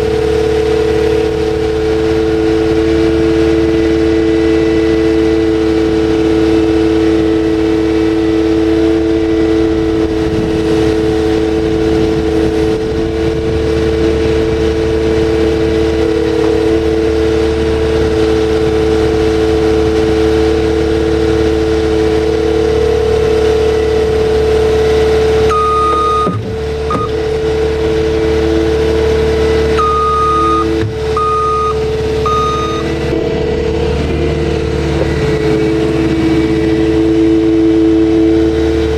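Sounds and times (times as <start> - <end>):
skid steer engine hum: 0.0 - 38.9
machine alarm beeping: 25.5 - 27.2, 29.8 - 32.9.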